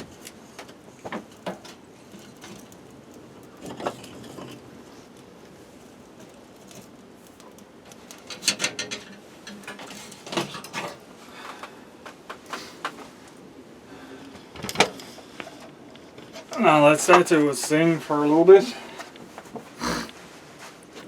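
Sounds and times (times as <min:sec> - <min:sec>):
objects knocking and rattling: 0:08.1 - 0:11.0.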